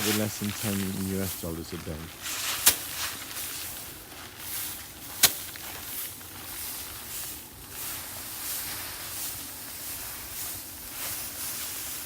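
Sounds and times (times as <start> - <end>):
faint rustling: 0.0 - 12.0
rice sheaves thwacking: 0.0 - 12.0.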